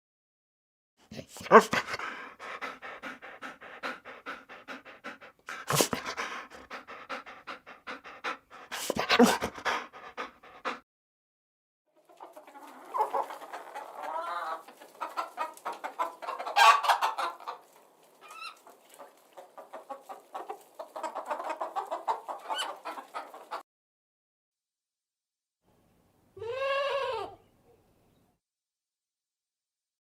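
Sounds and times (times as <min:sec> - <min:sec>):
chickens clucking: 0:01.5 - 0:10.8, 0:12.0 - 0:23.6.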